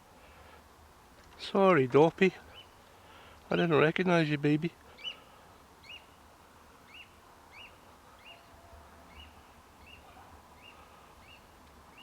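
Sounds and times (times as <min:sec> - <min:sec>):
faint bird chirps: 0:04.9 - 0:06.2, 0:06.9 - 0:12.0.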